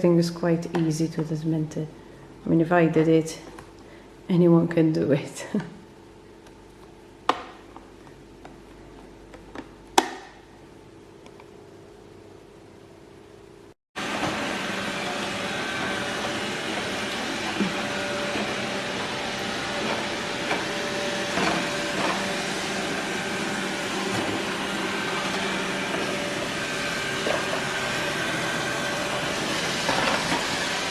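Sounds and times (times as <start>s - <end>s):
robot vacuum cleaner running: 14.0s - 30.9s.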